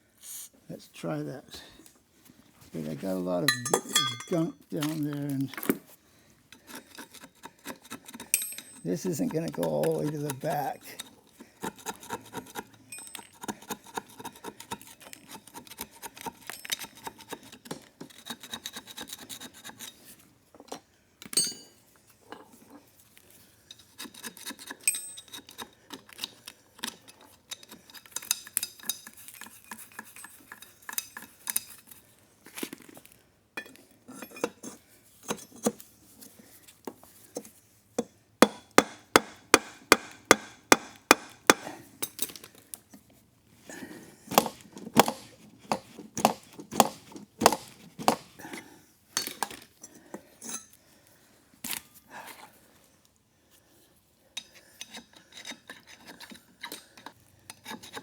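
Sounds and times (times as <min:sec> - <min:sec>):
metal tools scraping and clicking: 0:03.4 - 0:05.9, 0:06.5 - 0:22.8, 0:23.6 - 0:32.1, 0:33.6 - 0:35.9, 0:38.5 - 0:43.0, 0:49.2 - 0:50.8, 0:54.4 - 0:58.0.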